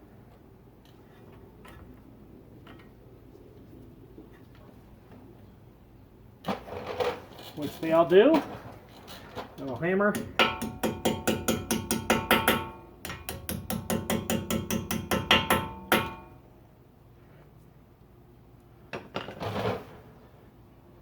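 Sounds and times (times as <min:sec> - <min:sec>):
hammer tapping metal pins: 0:09.6 - 0:16.4.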